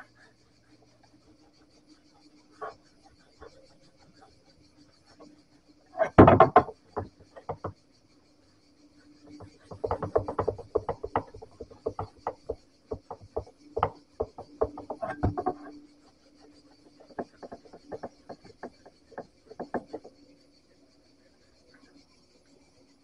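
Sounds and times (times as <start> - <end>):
knocks on wooden surface: 6.0 - 7.8, 9.4 - 15.8, 17.1 - 20.1.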